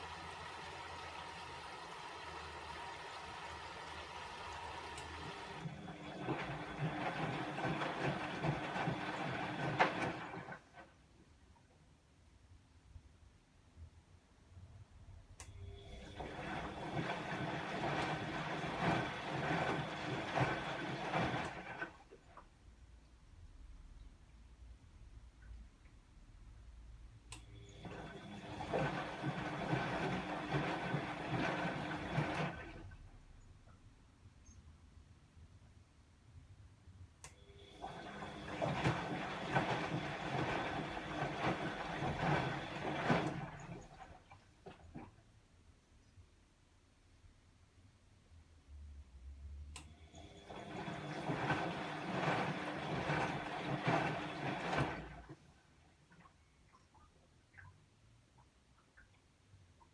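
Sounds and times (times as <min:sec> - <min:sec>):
washing machine water and drum: 0:00.0 - 0:11.0, 0:15.6 - 0:22.5, 0:27.6 - 0:33.2, 0:37.6 - 0:45.2, 0:50.1 - 0:57.8.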